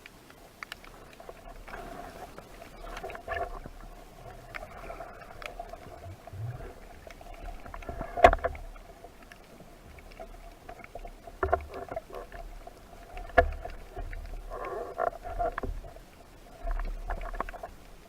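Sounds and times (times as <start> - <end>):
small underwater clicks and taps: 0.0 - 18.0
steady hum: 4.0 - 8.1.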